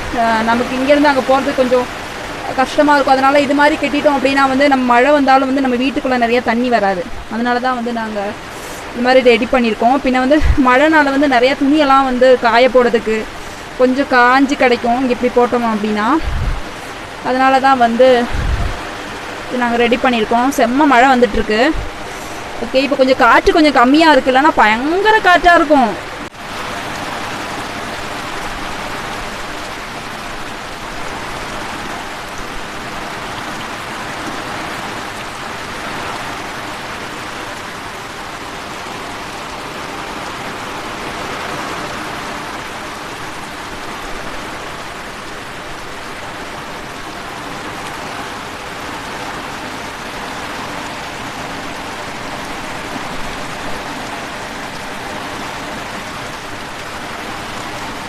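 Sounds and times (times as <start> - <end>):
heavy rain pouring: 0.0 - 58.0.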